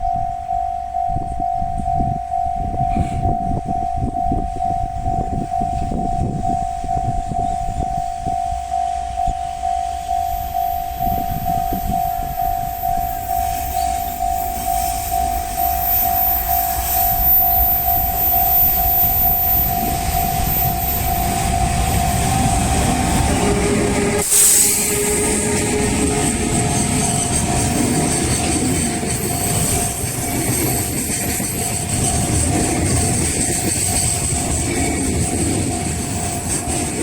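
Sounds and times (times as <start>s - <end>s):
level crossing bell ringing: 0.0s - 24.2s
train passing: 0.0s - 37.0s.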